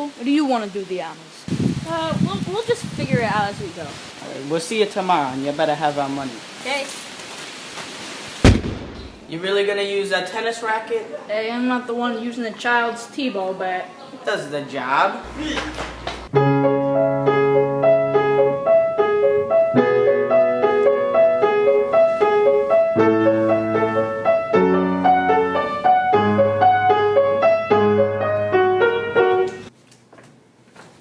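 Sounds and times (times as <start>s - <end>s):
piano music: 15.3s - 29.7s.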